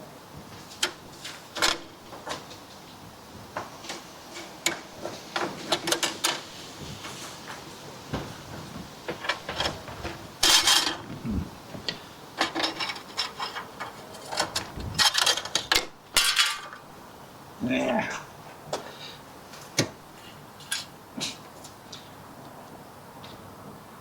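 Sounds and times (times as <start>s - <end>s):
rattling metal scrape: 9.3s - 11.2s, 12.4s - 16.8s
metal clicks and knocks: 11.8s - 16.8s.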